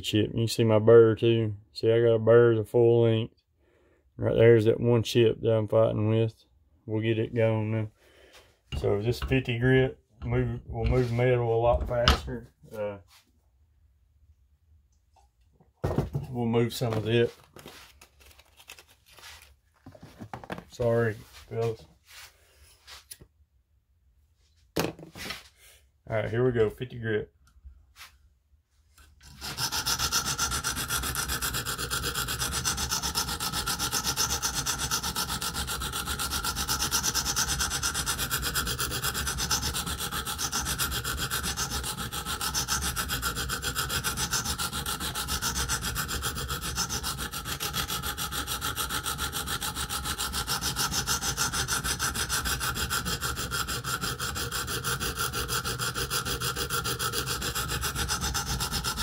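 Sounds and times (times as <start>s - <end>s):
sharpening stone scraping knife edge: 29.2s - 59.0s.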